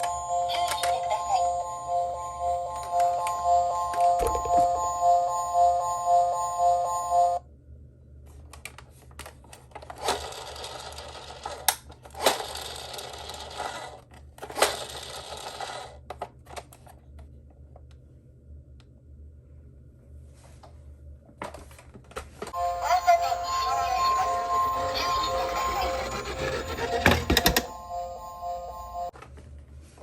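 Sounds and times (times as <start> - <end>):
electronic toy siren: 0.0 - 7.4, 22.6 - 29.1
toy cars rattling on plastic: 9.7 - 16.8.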